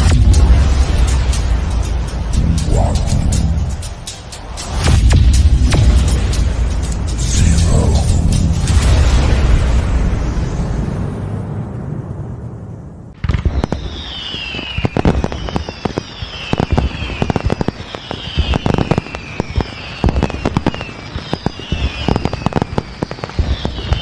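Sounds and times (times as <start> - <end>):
firework cracks and bangs: 0.0 - 2.4, 3.3 - 11.7, 13.2 - 24.0
firework boom: 2.3 - 12.6
falling firework whistle: 13.2 - 24.0.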